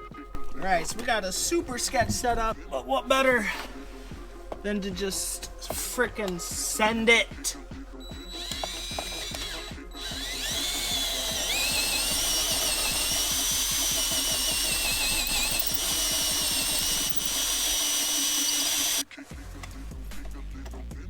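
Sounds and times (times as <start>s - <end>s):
power drill whining under load: 8.0s - 19.1s.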